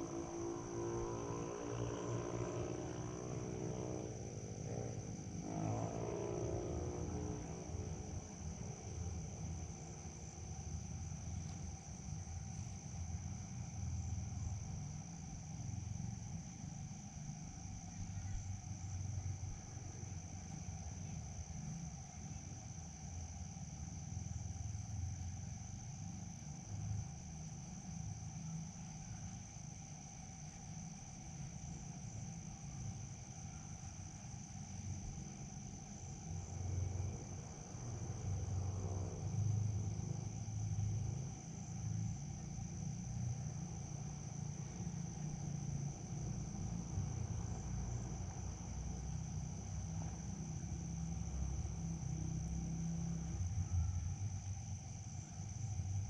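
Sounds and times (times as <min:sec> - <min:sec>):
crickets chirring: 0:00.0 - 0:56.0
low uneven rumble: 0:34.8 - 0:54.6.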